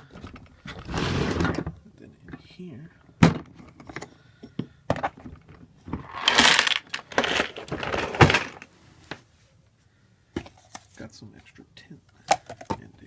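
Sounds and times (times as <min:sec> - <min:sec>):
rustling and clatter of tools: 0:00.0 - 0:02.5, 0:03.3 - 0:09.3.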